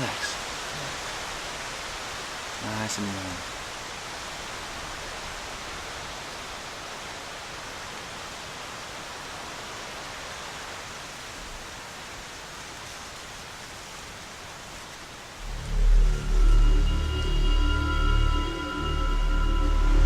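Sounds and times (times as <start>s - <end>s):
strong wind through trees: 0.0s - 20.0s
music: 15.4s - 20.0s.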